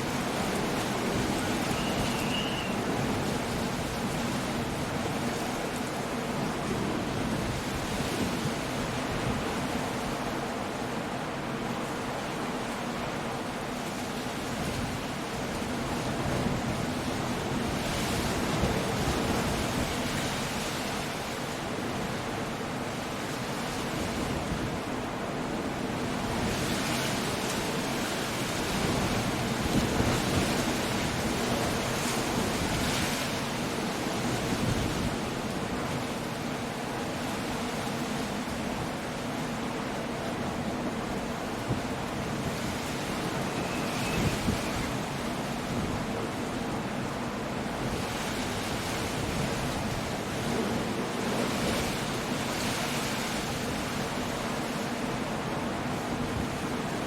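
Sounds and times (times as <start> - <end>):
surf rushing: 0.0 - 57.0
wind gusts: 0.0 - 57.0.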